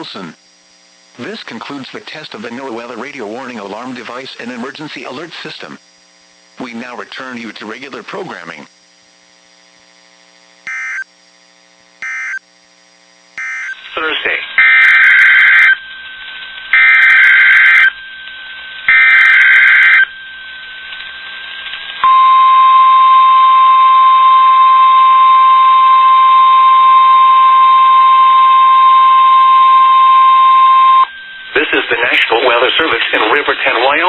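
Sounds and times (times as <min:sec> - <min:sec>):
steady single-pitch alarm tone: 0:10.6 - 0:11.1, 0:12.0 - 0:12.5, 0:13.4 - 0:13.9, 0:14.6 - 0:32.2.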